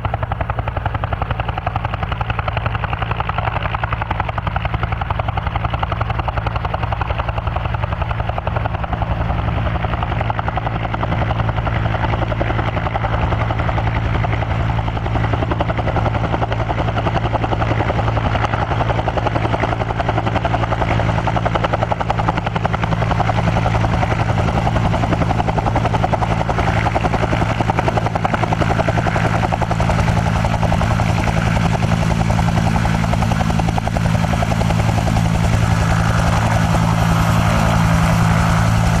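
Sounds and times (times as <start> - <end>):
helicopter running steadily: 0.0 - 39.0.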